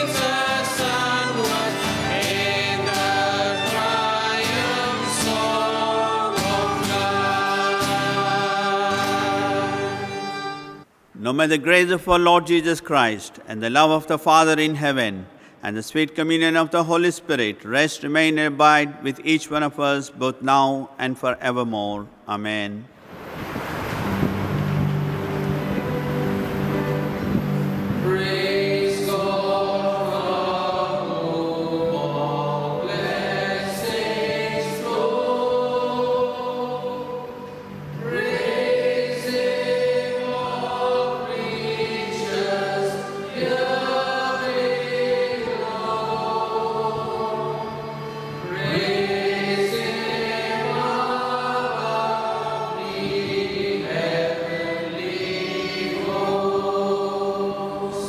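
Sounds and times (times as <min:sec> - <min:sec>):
choir singing: 0:00.0 - 0:10.8, 0:25.1 - 0:58.0.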